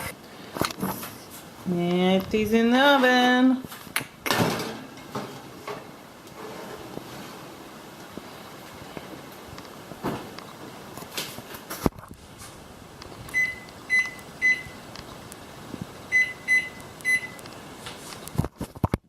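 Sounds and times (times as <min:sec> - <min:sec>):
oven door shutting: 0:04.3 - 0:07.5
kitchen timer beeps: 0:13.3 - 0:14.8, 0:16.1 - 0:17.4.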